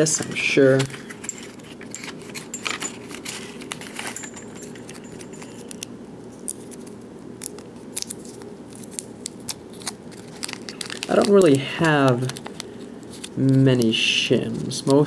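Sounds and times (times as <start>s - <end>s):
steady low hum: 0.0s - 15.0s.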